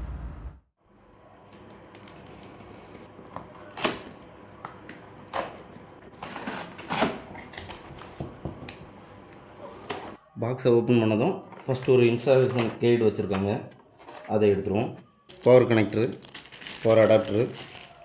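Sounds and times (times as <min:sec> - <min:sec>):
packing rustling and scraping: 0:06.1 - 0:08.3, 0:16.2 - 0:18.0.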